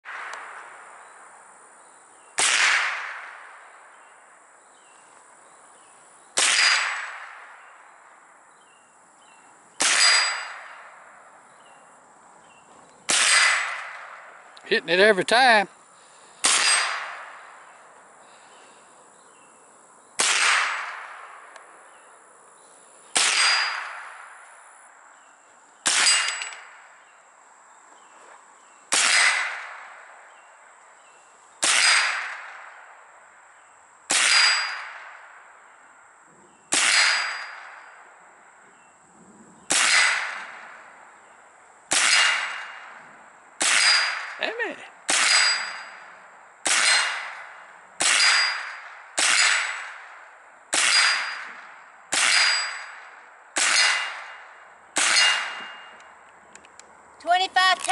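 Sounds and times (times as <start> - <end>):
rifle shots: 2.4 - 3.7, 6.4 - 7.6, 9.8 - 11.0, 13.1 - 14.4, 16.4 - 17.5, 20.2 - 21.4, 23.1 - 24.3, 25.8 - 26.7, 28.9 - 30.1, 31.6 - 32.8, 34.1 - 35.2, 36.7 - 37.8, 39.7 - 40.8, 41.9 - 43.0, 43.6 - 44.4, 45.1 - 46.0, 46.6 - 55.9
steel target ringing: 9.8 - 11.0, 45.2 - 46.0, 48.0 - 49.8, 50.8 - 53.0, 55.0 - 56.0.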